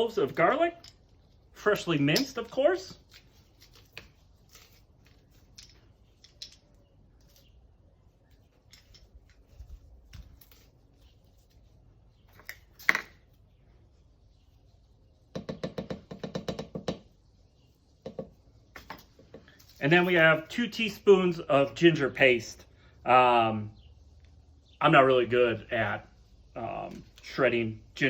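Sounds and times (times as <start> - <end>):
utensils clicking and tapping: 0.3 - 7.4, 15.3 - 17.0.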